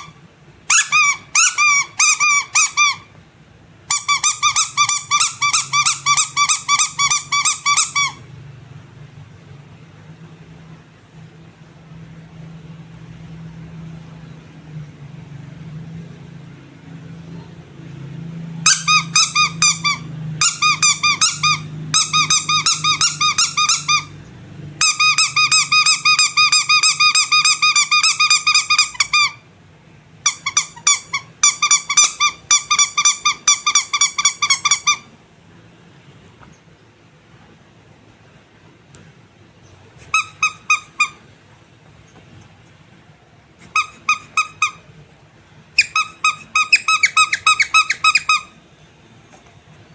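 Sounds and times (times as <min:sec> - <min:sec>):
rubber toys squeaking: 0:00.0 - 0:03.1, 0:03.9 - 0:08.3, 0:18.6 - 0:24.2, 0:24.8 - 0:29.5, 0:30.2 - 0:35.1, 0:39.9 - 0:41.2, 0:43.6 - 0:44.9, 0:45.7 - 0:48.6.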